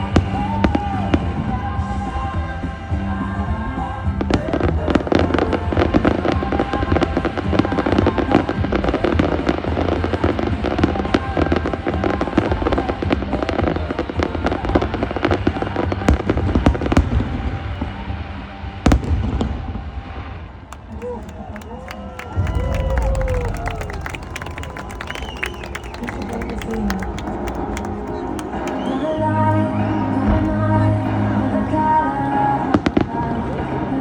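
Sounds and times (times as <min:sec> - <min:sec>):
fireworks crackling and popping: 0:20.7 - 0:29.1
music soundtrack: 0:20.7 - 0:34.0.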